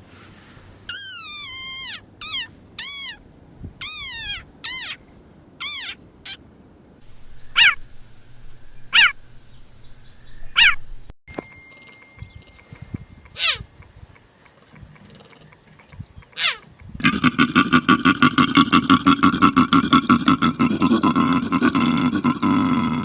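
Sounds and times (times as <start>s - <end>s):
animal fast pulsing call: 0.9s - 3.2s, 3.8s - 5.0s, 5.6s - 6.4s, 7.5s - 7.8s, 8.9s - 9.2s.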